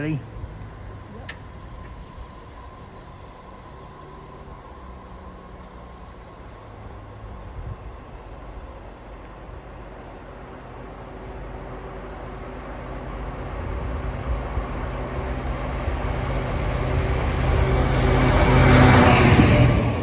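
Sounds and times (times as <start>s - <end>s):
diesel train engine rumble: 0.0s - 20.0s.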